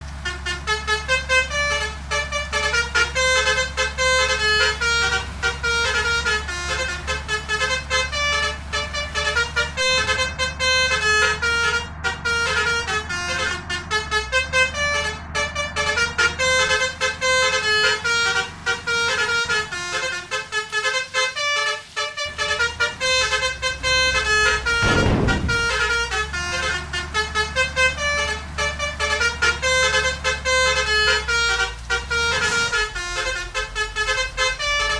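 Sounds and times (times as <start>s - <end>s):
low engine hum: 0.0s - 34.9s
musical air horn playing a tune: 0.2s - 34.9s
low rush: 22.2s - 25.9s.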